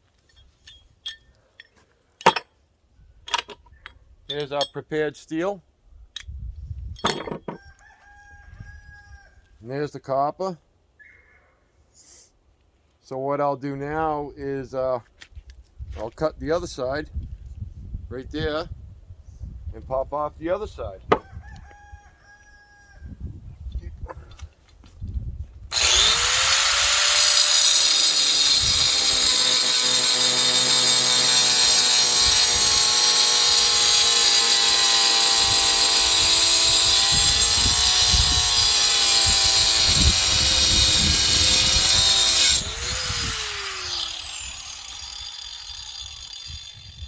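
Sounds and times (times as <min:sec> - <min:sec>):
angle grinder cutting metal: 0:25.7 - 0:47.0.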